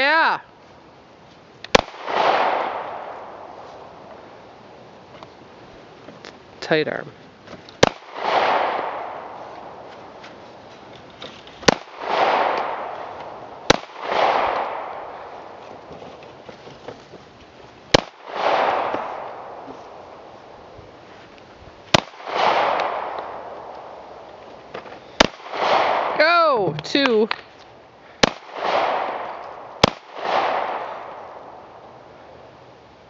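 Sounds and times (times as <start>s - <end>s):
pistol shots with echo: 1.7s - 3.5s, 7.8s - 9.8s, 11.7s - 13.1s, 13.7s - 15.2s, 17.9s - 19.6s, 21.9s - 24.0s, 25.2s - 26.2s, 28.2s - 31.6s.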